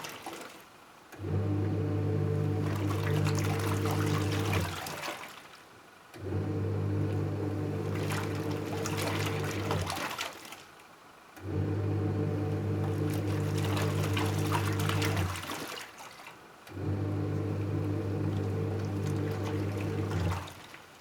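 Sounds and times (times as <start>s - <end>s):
washing machine motor humming: 1.2s - 5.1s, 6.2s - 10.2s, 11.4s - 15.7s, 16.7s - 20.8s
water sloshing: 2.6s - 5.6s, 7.8s - 10.7s, 12.6s - 16.4s, 17.3s - 21.0s.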